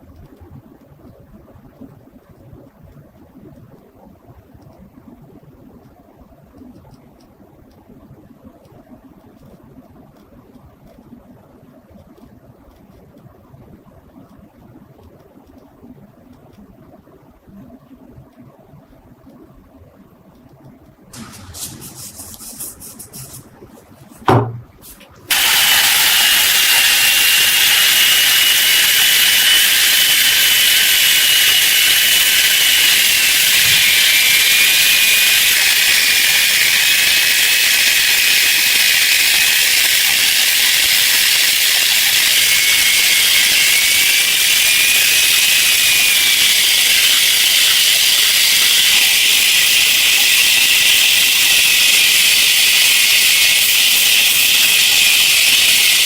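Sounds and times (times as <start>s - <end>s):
pressurised jet hissing: 21.2s - 23.7s, 24.8s - 56.0s
sharp knock: 24.2s - 24.8s.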